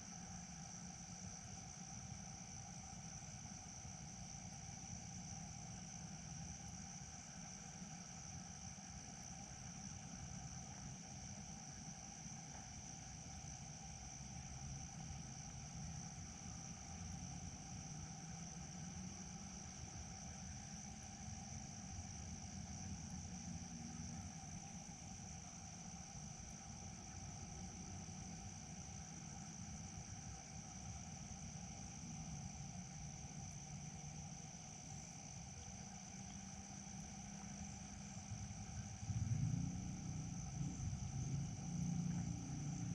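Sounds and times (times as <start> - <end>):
insects chirring: 0.0 - 42.9
low rumble: 38.9 - 42.9.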